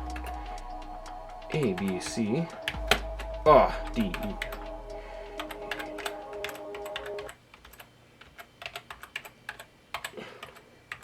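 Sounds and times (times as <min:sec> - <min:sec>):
steady tone: 0:00.0 - 0:07.3.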